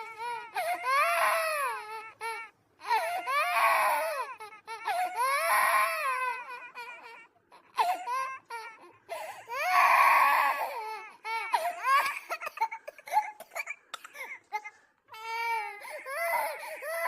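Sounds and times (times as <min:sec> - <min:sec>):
child wailing loudly: 0:00.0 - 0:07.2, 0:09.5 - 0:12.2
children crying and sobbing: 0:00.0 - 0:17.0.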